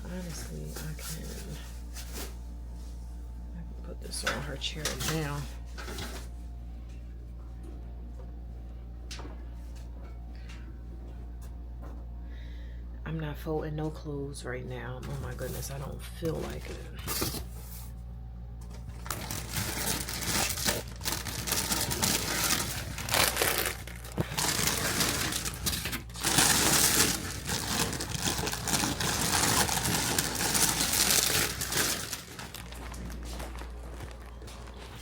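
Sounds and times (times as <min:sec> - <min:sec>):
plastic packaging crinkling: 0:18.7 - 0:35.0.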